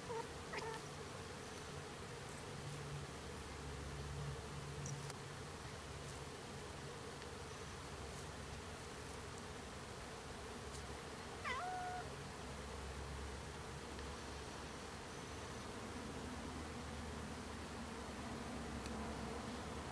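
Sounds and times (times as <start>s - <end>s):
cat meowing: 11.4s - 12.1s.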